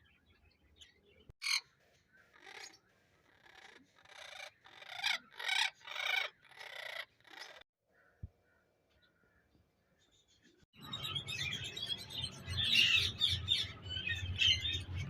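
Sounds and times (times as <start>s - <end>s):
parrot squawking harshly: 3.3s - 7.6s.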